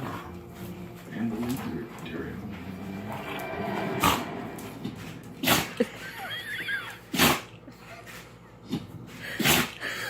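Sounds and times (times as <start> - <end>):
pet sneezing: 5.4 - 5.8, 7.1 - 7.6, 9.3 - 10.0.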